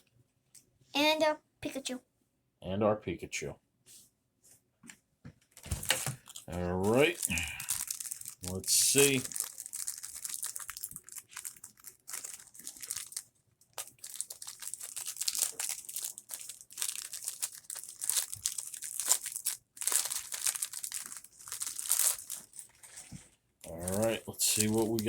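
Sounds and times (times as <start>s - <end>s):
plastic wrapper crinkling and tearing: 5.5s - 25.0s.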